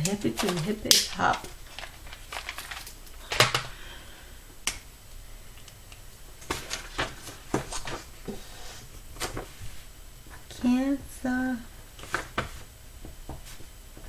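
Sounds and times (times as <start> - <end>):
sharp snaps: 0.8 - 1.5, 4.6 - 6.1.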